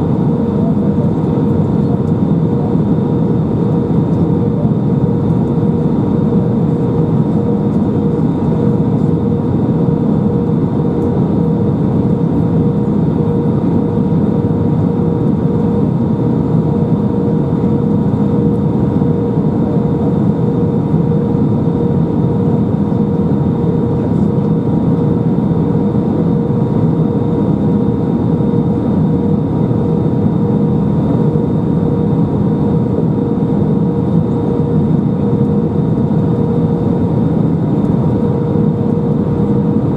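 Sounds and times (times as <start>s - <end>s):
airplane cabin engine hum: 0.0s - 39.9s.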